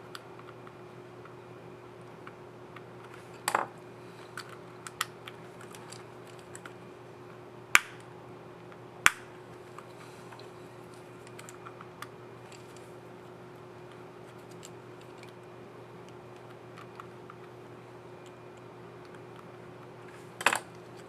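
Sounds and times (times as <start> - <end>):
faint steady hum: 0.0 - 21.0
sharp plastic snaps: 7.8 - 8.1, 9.0 - 9.3.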